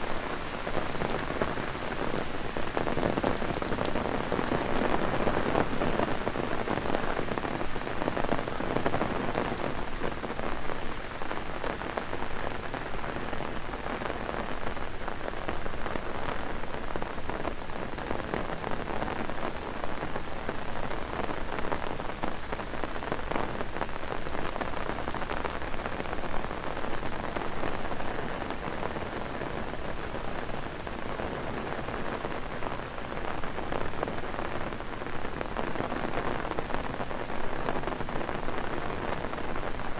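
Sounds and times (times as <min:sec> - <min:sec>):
heavy rain on an umbrella: 0:00.0 - 0:39.9.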